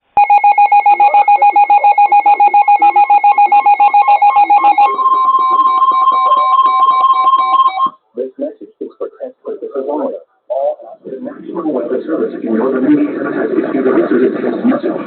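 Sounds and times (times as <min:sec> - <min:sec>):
steady high alert tone: 0:00.2 - 0:08.0.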